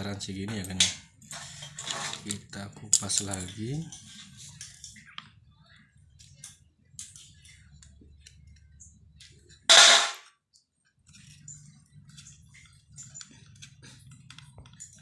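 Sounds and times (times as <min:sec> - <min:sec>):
cable and tool rustling: 0:00.6 - 0:05.0.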